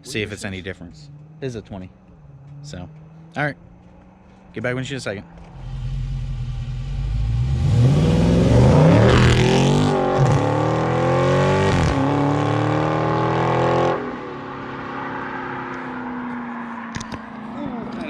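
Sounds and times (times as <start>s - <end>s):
car engine accelerating hard: 4.8s - 16.1s.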